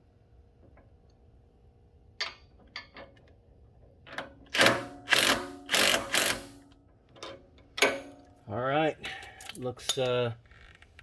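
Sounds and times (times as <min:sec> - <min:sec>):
impact wrench bursts: 0:04.5 - 0:06.7.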